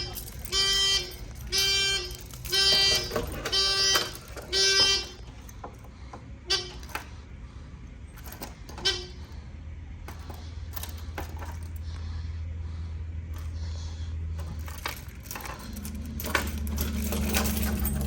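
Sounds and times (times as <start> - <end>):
fire alarm horn beeping: 0.0 - 7.3, 8.2 - 9.5, 14.7 - 18.0
low steady hum: 0.0 - 18.0.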